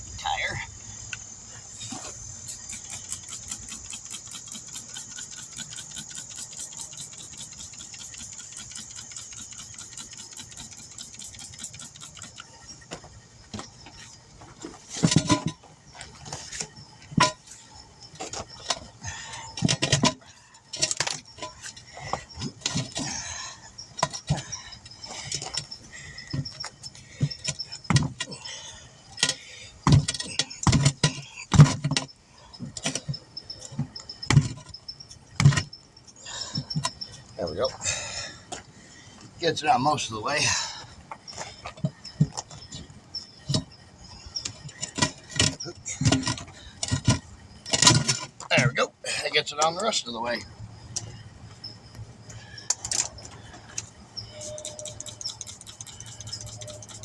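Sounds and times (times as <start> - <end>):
steady high hiss: 0.0 - 19.1
rapid even ticking: 2.3 - 12.7, 54.4 - 57.0.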